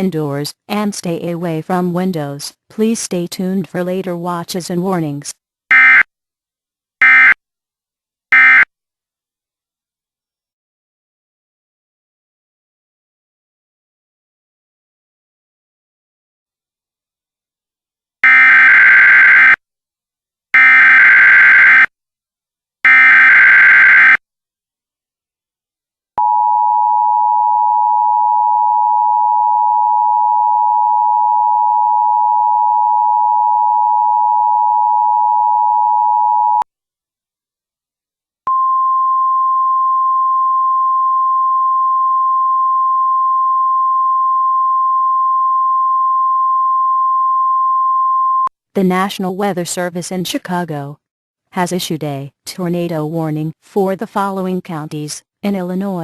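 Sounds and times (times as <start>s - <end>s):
single-pitch alarm tone: 8.3s - 8.7s, 18.2s - 19.6s, 22.9s - 24.2s, 26.2s - 36.6s, 38.5s - 48.5s.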